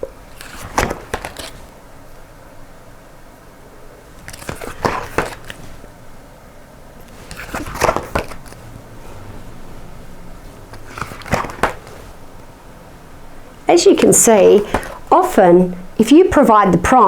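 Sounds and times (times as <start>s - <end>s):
person speaking letter sounds: 13.7s - 17.0s.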